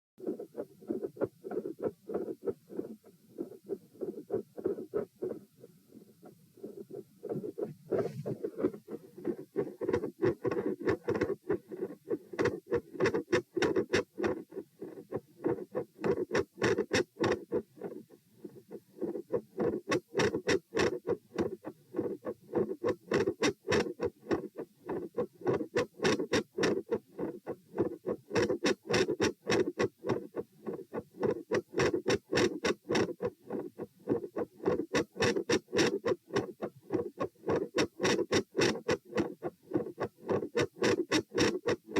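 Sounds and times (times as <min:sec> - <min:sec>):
heartbeat through stethoscope: 0:06.6 - 0:14.4.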